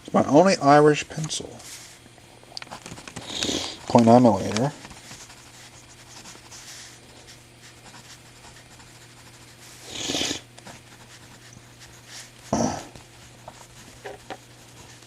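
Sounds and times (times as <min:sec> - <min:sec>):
person sniffing: 0:03.2 - 0:03.8, 0:09.8 - 0:10.5, 0:12.5 - 0:13.0
pencil scratching on paper: 0:03.2 - 0:15.0.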